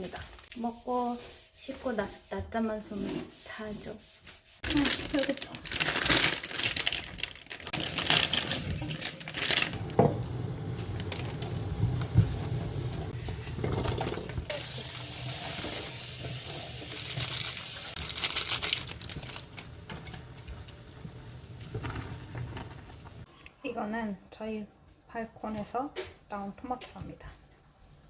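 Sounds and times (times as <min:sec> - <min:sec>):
plastic packaging crinkling and tearing: 0:04.6 - 0:10.0, 0:14.5 - 0:20.8.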